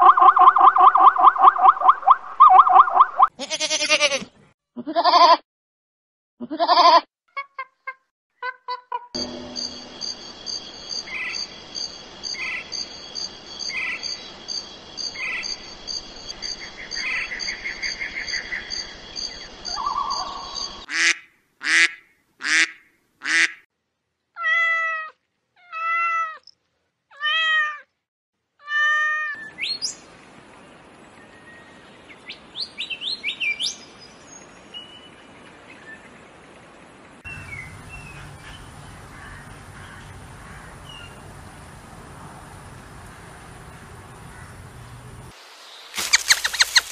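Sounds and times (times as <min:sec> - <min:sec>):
steady high trill: 0:09.2 - 0:10.6
high chirping: 0:09.2 - 0:12.6, 0:46.0 - 0:46.9
bird-like chirps: 0:09.2 - 0:20.9, 0:37.3 - 0:41.2, 0:45.7 - 0:46.9
cat meowing: 0:24.4 - 0:26.4, 0:27.1 - 0:27.9.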